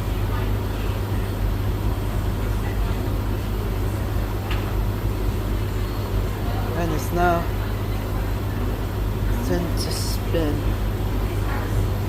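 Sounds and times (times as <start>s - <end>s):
washing machine and dryer humming: 0.0s - 12.0s.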